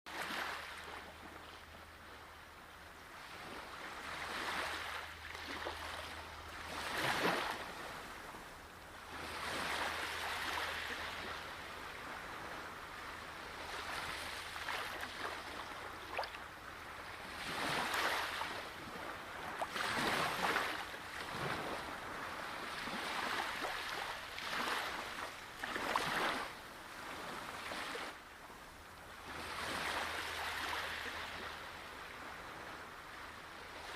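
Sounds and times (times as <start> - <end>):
ocean waves breaking: 3.2 - 8.5, 9.1 - 28.2.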